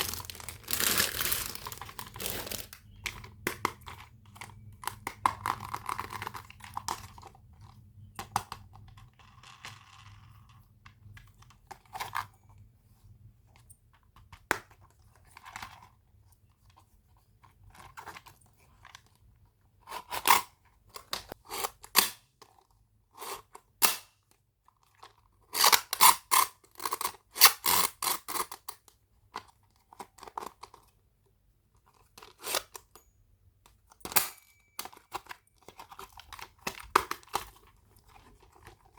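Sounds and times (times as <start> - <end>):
plastic packaging crinkling and tearing: 0.0 - 3.0.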